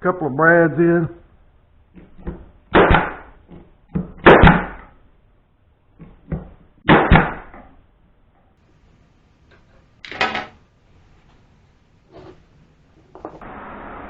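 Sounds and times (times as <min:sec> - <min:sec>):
nail gun firing into wood: 0:02.7 - 0:03.3, 0:04.2 - 0:04.8, 0:06.9 - 0:07.5.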